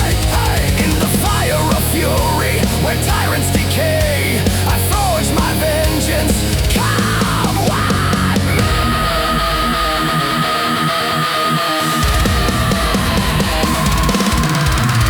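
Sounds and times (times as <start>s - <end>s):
heavy metal music: 0.0s - 15.0s
lead guitar bending notes: 7.0s - 15.0s.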